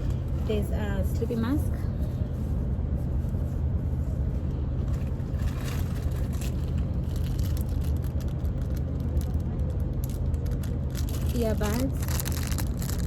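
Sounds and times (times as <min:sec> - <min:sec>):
aircraft cabin drone: 0:00.0 - 0:13.0.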